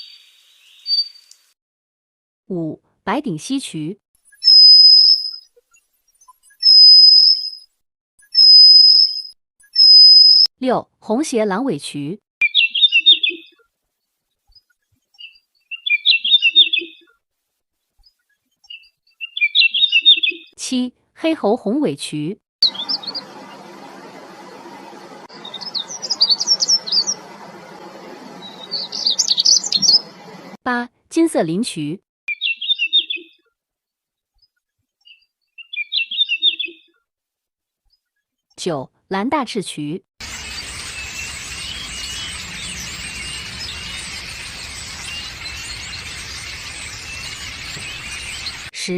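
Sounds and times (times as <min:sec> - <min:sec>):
bird singing warbled song: 0:00.0 - 0:01.5, 0:04.3 - 0:10.5, 0:12.4 - 0:13.6, 0:14.5 - 0:17.1, 0:18.0 - 0:20.6, 0:22.6 - 0:23.7, 0:25.3 - 0:30.5, 0:32.3 - 0:33.5, 0:34.4 - 0:37.0, 0:40.2 - 0:48.8.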